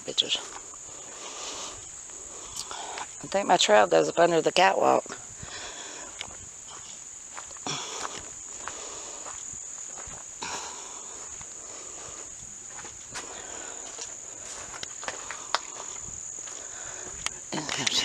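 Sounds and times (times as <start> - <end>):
high-pitched insect chorus: 0.0 - 18.0
footsteps scuffing: 6.2 - 10.6, 11.2 - 18.0.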